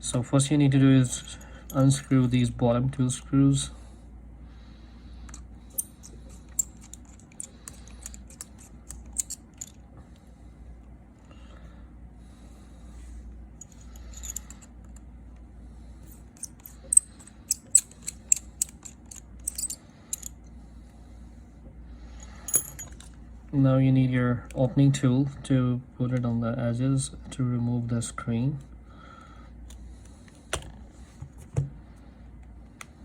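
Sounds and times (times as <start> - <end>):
screwdriver metallic clicks: 6.5 - 9.8, 16.4 - 20.3.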